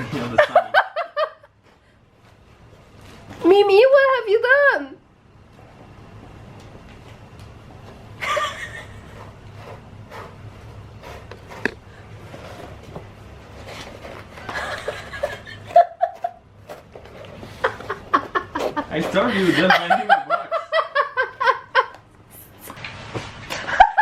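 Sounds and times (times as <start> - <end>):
woman laughing: 8.2 - 9.2, 14.4 - 16.4, 17.6 - 22.0.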